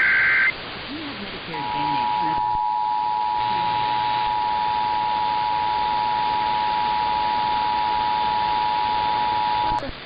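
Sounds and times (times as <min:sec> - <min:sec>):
radio hiss: 0:00.0 - 0:10.0
two-tone alert signal: 0:01.6 - 0:09.8.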